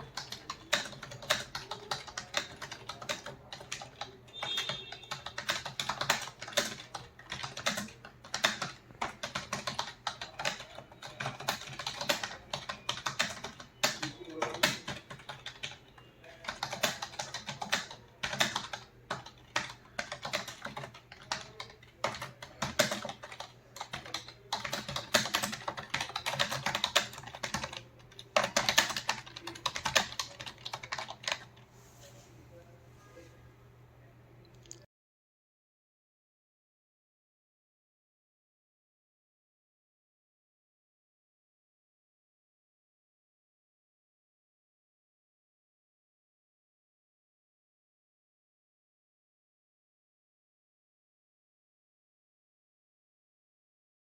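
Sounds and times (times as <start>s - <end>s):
rapid keyboard typing: 0.0s - 31.6s.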